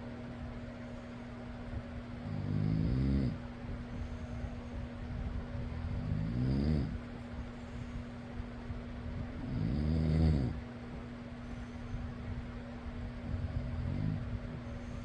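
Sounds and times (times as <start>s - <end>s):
electric fan humming: 0.0s - 15.0s
person snoring: 9.5s - 10.6s.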